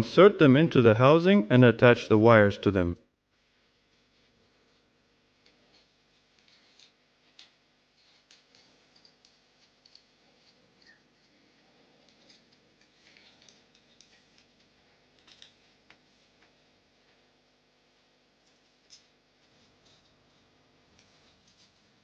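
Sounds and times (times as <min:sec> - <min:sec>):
small parts clicking and tapping: 0:08.2 - 0:11.0.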